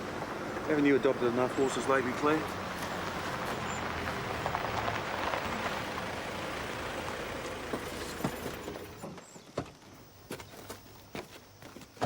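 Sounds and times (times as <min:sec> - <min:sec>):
vehicle engine humming: 0:00.0 - 0:09.2.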